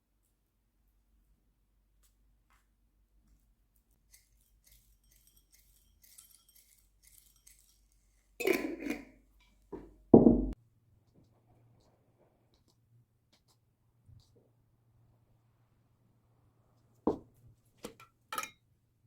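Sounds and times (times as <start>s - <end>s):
tableware clattering: 8.4s - 9.2s, 18.3s - 18.6s
tableware clinking: 8.4s - 9.2s, 18.3s - 18.6s
heavy knocks: 10.2s - 10.6s.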